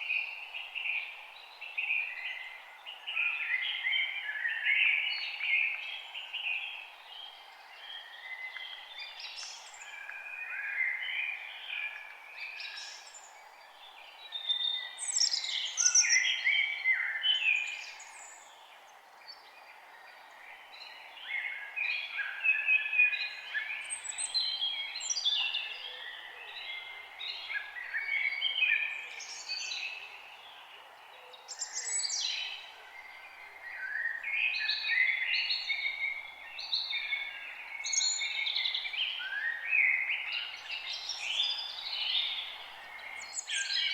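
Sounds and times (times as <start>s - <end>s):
faint background hiss: 0.0s - 43.9s.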